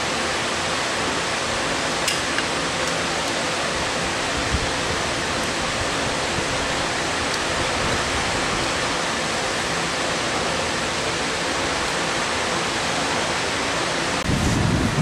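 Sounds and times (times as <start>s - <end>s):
steady rushing noise: 0.0s - 15.0s.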